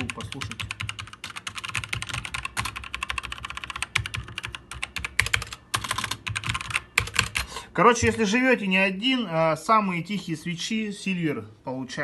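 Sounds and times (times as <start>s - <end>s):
mechanical keyboard typing: 0.0s - 7.5s.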